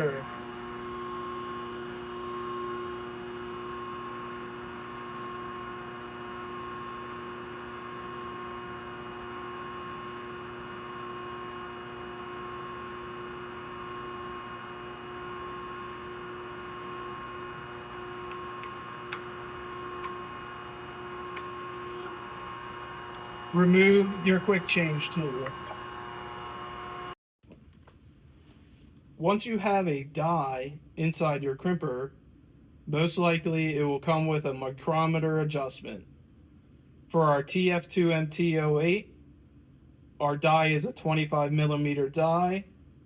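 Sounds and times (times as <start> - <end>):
hydraulic crimper humming: 0.0 - 27.2.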